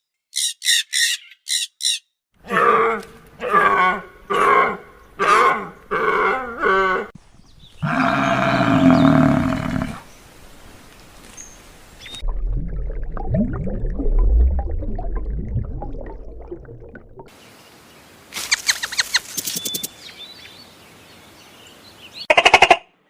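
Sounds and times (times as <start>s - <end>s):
long low animal call: 2.4s - 7.2s, 7.8s - 10.1s
low rumble: 12.2s - 17.3s.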